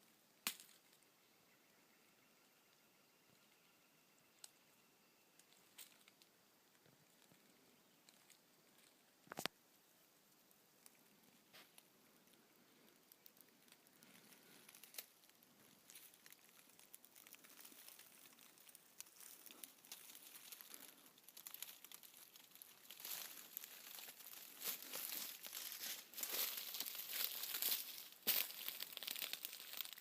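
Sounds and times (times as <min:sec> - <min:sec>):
footsteps crunching on dry leaves: 0:15.9 - 0:30.0.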